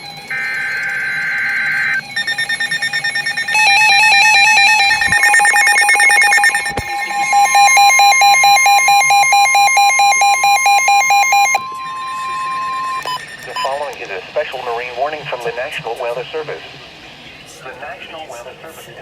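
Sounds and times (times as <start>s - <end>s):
weather radio alarms beeping: 0.0s - 16.7s
steady warning tone: 0.0s - 18.3s
buzzing digital data burst: 0.3s - 13.9s.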